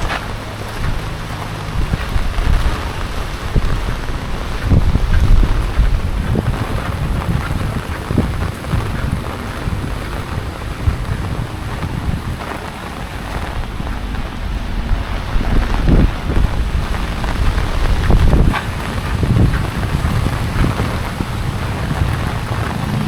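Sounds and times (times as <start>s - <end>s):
heavy rain hiss: 0.0s - 23.0s
wind buffeting microphone: 0.0s - 23.0s.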